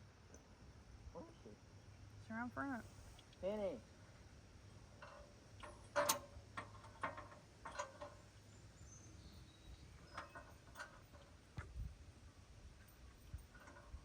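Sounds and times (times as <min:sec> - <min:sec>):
faint steady hum: 0:00.0 - 0:14.0
light clicks and clinks: 0:05.0 - 0:11.8, 0:12.8 - 0:14.0.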